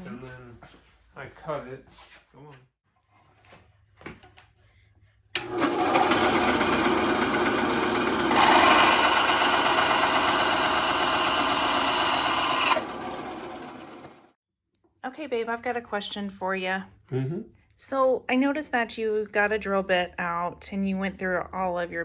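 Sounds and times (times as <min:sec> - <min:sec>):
power tool motor: 0:05.4 - 0:14.4.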